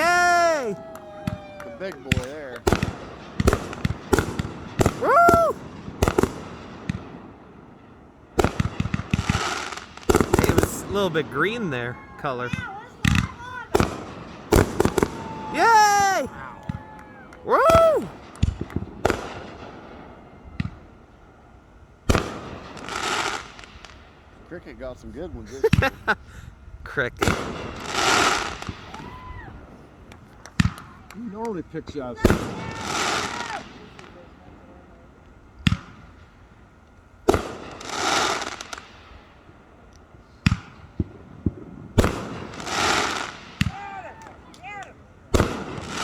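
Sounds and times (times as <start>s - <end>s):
firework pops: 0.0s - 7.0s, 8.4s - 11.1s, 12.5s - 19.8s, 30.0s - 34.2s, 37.3s - 39.0s, 40.0s - 46.0s
loud firework bangs: 0.0s - 21.0s, 22.0s - 24.4s, 27.2s - 34.2s, 37.2s - 39.5s, 40.4s - 44.0s, 45.3s - 46.0s.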